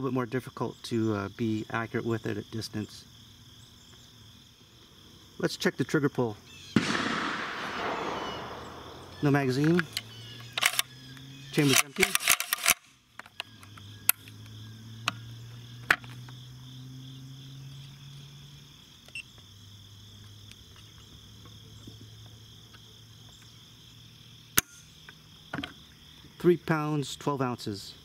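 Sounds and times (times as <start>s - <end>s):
crickets chirring: 0.0s - 28.0s
light handling clicks: 8.4s - 14.4s.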